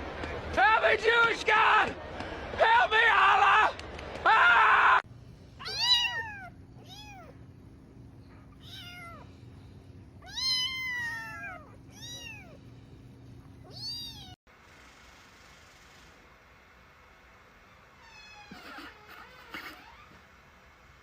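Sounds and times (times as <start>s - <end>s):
cat meowing: 5.6s - 7.4s, 8.6s - 9.3s, 10.2s - 12.6s, 13.6s - 14.4s.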